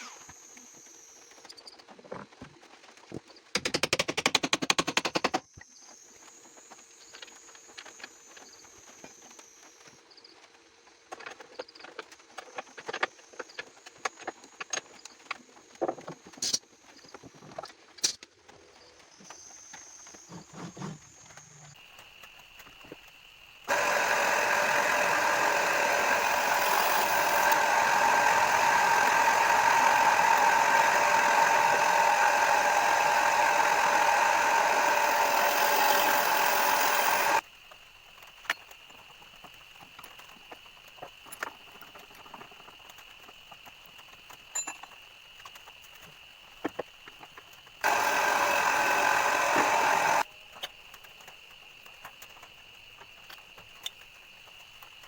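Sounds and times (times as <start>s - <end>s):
table saw whine: 23.7s - 37.4s, 47.8s - 50.3s.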